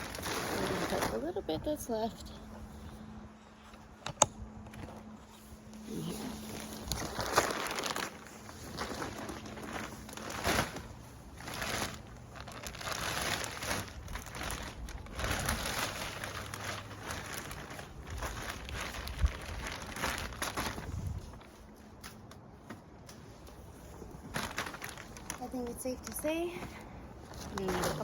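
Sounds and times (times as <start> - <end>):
plastic bag crinkling: 0.0 - 1.7, 4.8 - 21.7, 24.1 - 26.2, 27.3 - 28.0.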